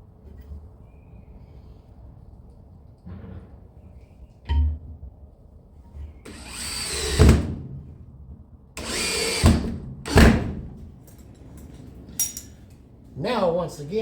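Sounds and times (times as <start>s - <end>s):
power drill bursts: 6.3s - 7.5s, 8.8s - 10.6s.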